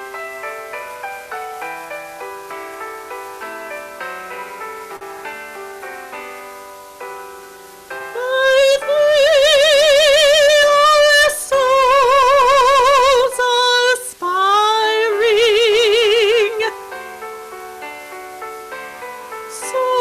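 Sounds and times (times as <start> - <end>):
soft instrumental accompaniment: 0.0 - 20.0
woman singing operatically: 8.1 - 16.8, 19.5 - 20.0.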